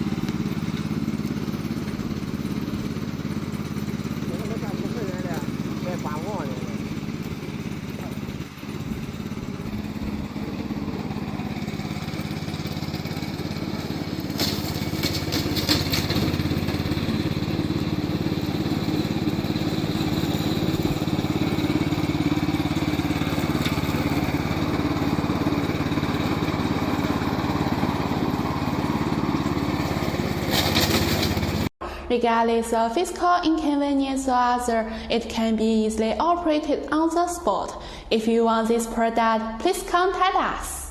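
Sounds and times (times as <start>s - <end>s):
lawn mower engine running: 0.0s - 31.7s.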